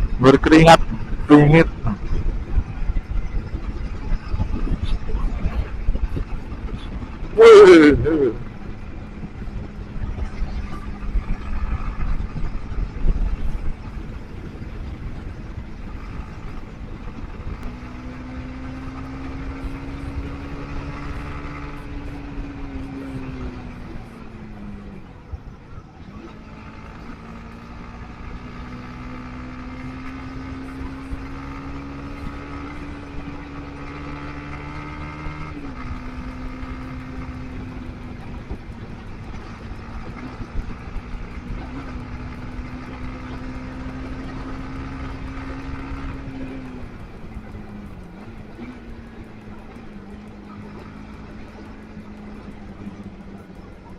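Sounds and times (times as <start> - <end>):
wind rumble: 0.0 - 50.1
motorcycle engine running: 0.0 - 53.9.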